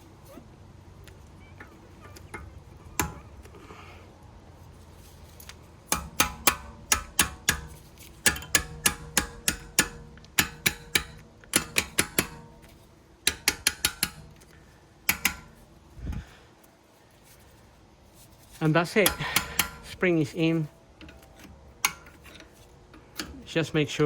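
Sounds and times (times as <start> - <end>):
metal spring ringing: 1.5 - 3.4, 5.4 - 12.7
screwdriver tapping metal spring: 1.6 - 3.5, 5.4 - 16.2, 19.0 - 20.2, 21.0 - 24.0.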